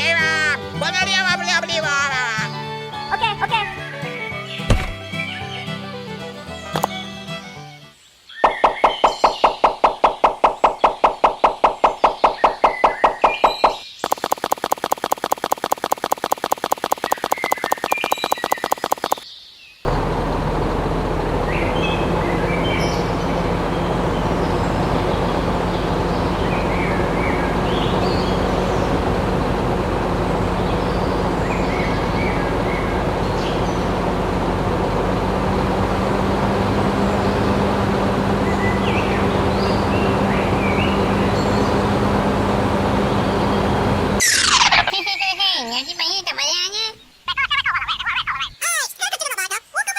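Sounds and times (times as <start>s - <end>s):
bird-like chirps: 7.9s - 14.9s, 15.9s - 19.9s.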